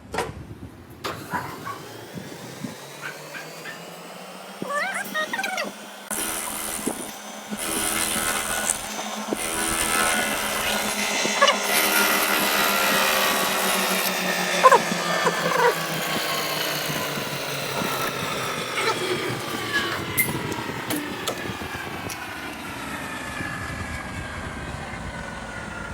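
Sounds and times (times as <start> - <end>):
machine spindle motor whine: 0.7 - 25.9
squeaks from cutting: 4.6 - 17.1, 18.8 - 21.4.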